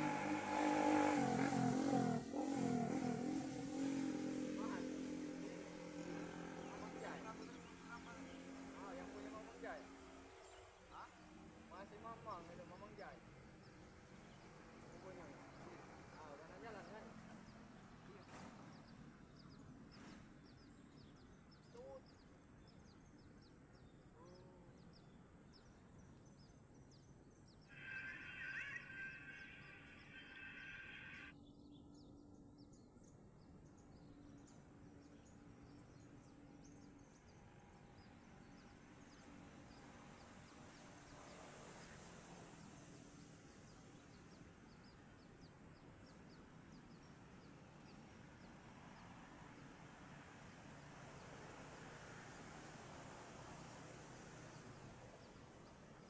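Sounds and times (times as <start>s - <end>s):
small bird chirping: 18.1s - 42.0s
soft lower calls: 27.7s - 31.3s
steady high buzz: 27.7s - 31.4s.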